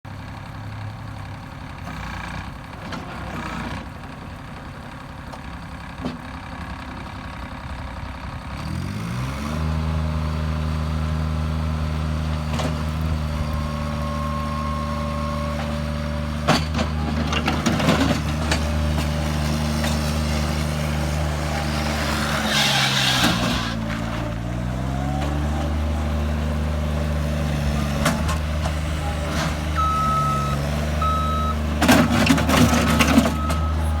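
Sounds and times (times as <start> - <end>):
diesel engine revving: 8.4 - 34.0.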